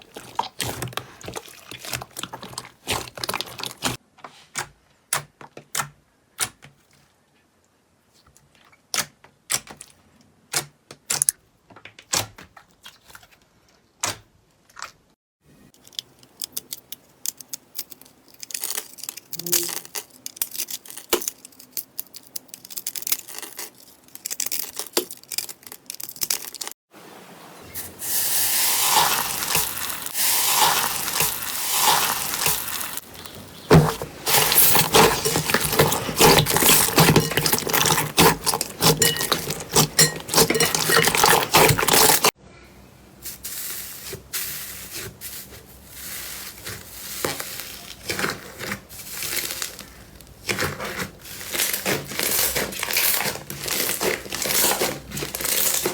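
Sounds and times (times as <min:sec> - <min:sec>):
slime crackling and squelching: 0:00.0 - 0:04.0, 0:16.4 - 0:26.8, 0:28.0 - 0:42.4, 0:44.4 - 0:55.9.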